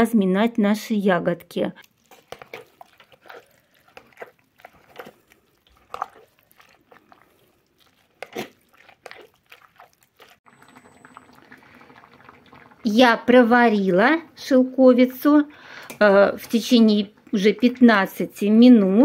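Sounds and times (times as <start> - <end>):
wet crunchy squelches of mashing: 1.8 - 12.9.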